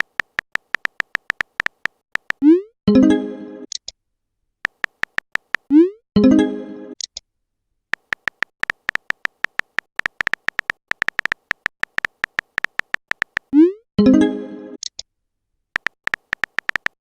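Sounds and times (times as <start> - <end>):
rapid electronic typing beeps: 8.0 - 13.5, 15.8 - 17.0.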